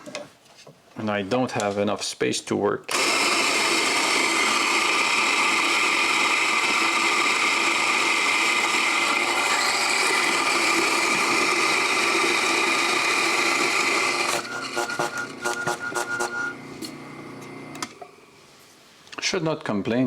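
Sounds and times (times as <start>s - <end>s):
electric coffee grinder running: 2.9s - 18.0s.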